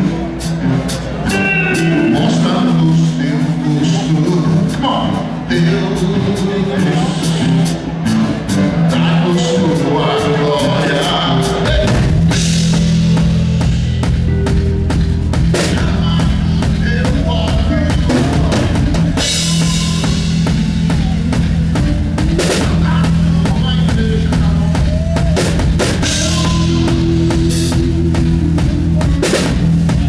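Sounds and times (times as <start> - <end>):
held bass notes: 0.0 - 30.0
drum kit hits: 11.5 - 30.0.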